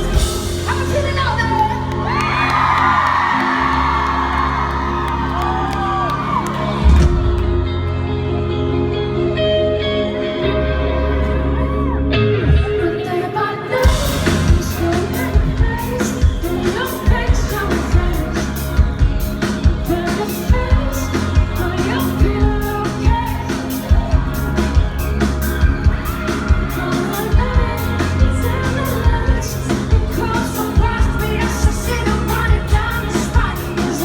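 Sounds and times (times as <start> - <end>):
rock band playing: 0.0 - 13.0, 13.8 - 34.0
woman singing: 12.4 - 24.9, 26.3 - 34.0.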